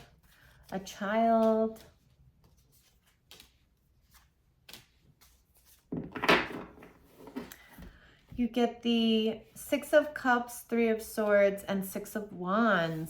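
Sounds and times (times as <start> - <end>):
deck of cards shuffling: 0.0 - 6.2, 12.7 - 13.0.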